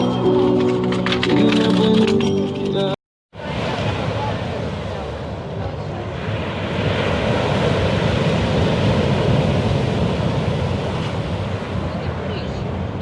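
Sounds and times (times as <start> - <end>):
rough sea crashing on shore: 3.4 - 13.0.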